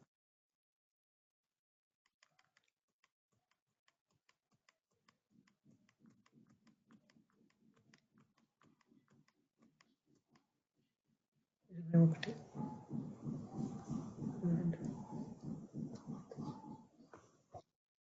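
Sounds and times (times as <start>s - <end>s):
faint keyboard typing: 3.4s - 10.4s, 11.8s - 17.3s.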